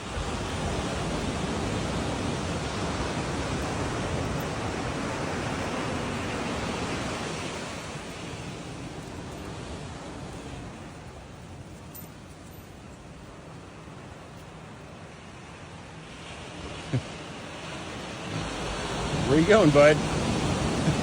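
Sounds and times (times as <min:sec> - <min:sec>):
steady rushing noise: 0:16.1 - 0:21.0.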